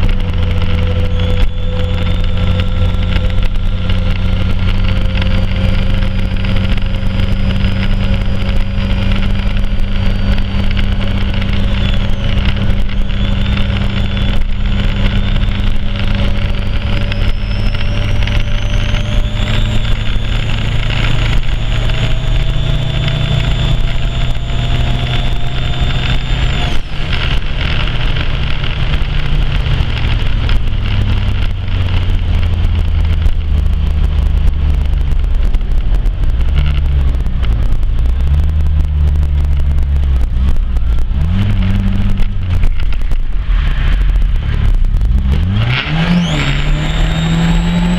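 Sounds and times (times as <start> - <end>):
car engine with rising whine: 0.0 - 47.9
high whistle: 11.6 - 16.0.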